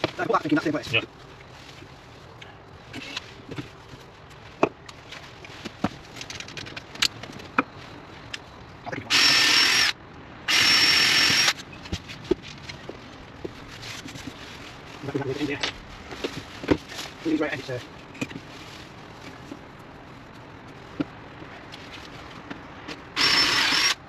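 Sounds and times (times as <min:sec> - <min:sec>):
power drill whining: 0:09.1 - 0:11.6, 0:23.2 - 0:24.0.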